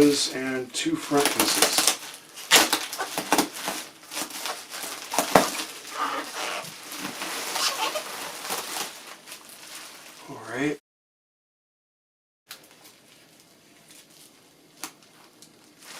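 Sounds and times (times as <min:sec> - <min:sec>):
packing material crinkling: 0:01.1 - 0:10.3, 0:12.5 - 0:15.9.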